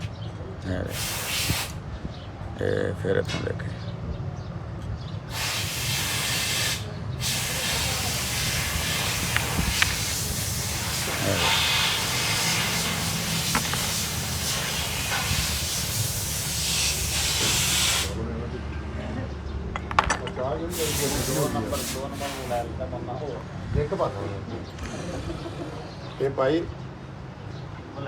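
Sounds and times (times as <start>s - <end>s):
pressurised air hissing: 0.9s - 1.8s, 5.3s - 18.2s, 20.7s - 22.7s.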